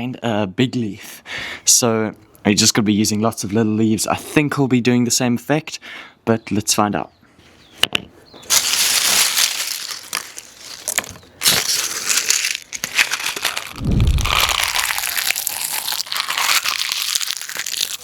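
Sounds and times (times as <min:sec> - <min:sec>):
leaves crunched by hand: 0:08.4 - 0:18.0
low thump: 0:13.8 - 0:14.5.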